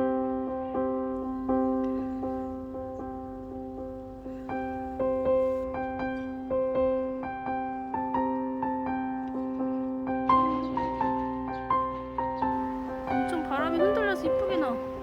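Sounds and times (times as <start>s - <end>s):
soft piano melody: 0.0s - 15.0s
held keyboard chord: 12.0s - 15.0s.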